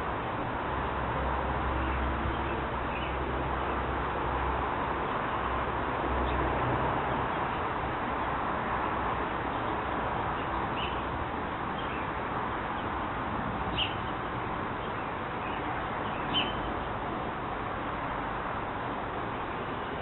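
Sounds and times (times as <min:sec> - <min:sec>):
birds chirping: 0:13.7 - 0:16.8.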